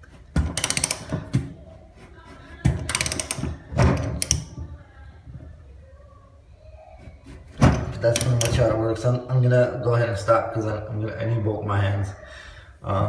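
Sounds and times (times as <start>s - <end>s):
rapid ratchet clicking: 0.6s - 1.1s, 2.9s - 3.5s.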